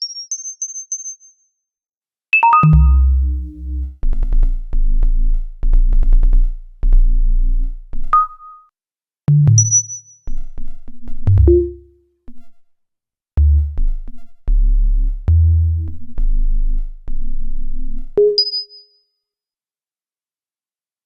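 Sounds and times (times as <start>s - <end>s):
high pinging tones: 2.4s - 3.3s, 9.6s - 10.2s, 18.2s - 19.0s
low synthesizer bass notes: 2.6s - 8.1s, 10.4s - 11.9s, 13.4s - 18.2s
drum machine beats clicking: 2.6s - 8.3s, 9.3s - 12.4s, 13.4s - 18.5s.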